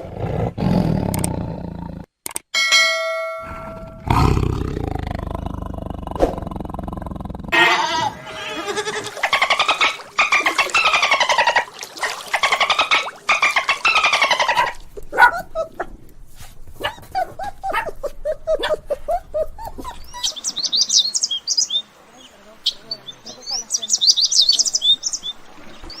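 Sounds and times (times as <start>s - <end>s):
long wavering animal calls: 7.5s - 14.8s.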